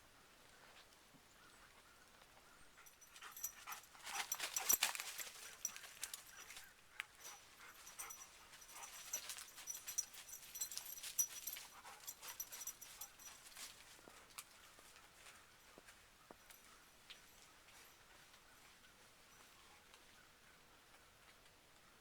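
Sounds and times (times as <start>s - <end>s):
dog panting: 2.8s - 13.4s.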